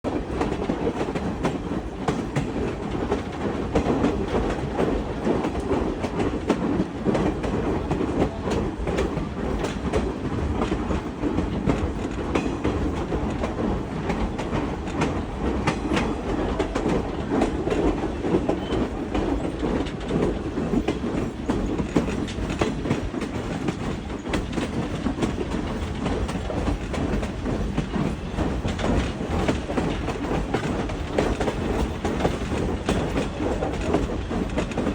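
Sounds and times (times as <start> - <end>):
train clicks and knocks: 0.0 - 34.9
train wheels rumbling on rails: 0.0 - 34.9.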